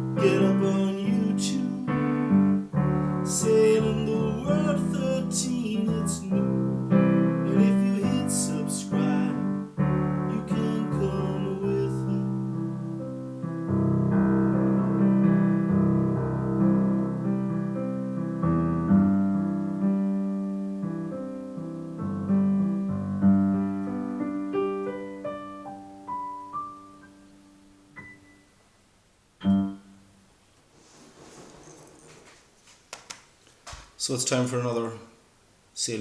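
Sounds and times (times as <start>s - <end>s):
solo piano chords and notes: 0.0s - 30.4s.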